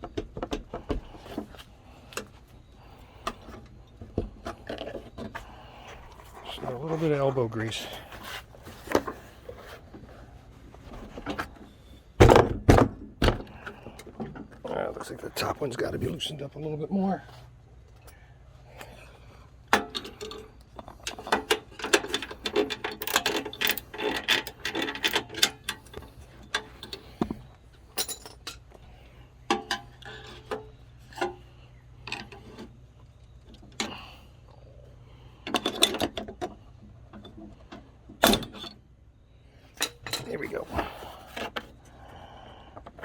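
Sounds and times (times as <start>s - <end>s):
metal tool clicking against bolts: 21.0s - 27.0s.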